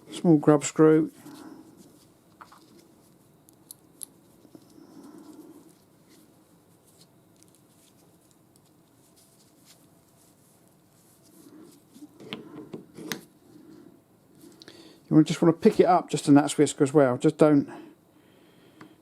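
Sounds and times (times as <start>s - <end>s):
soft handling noise: 0.1s - 14.6s.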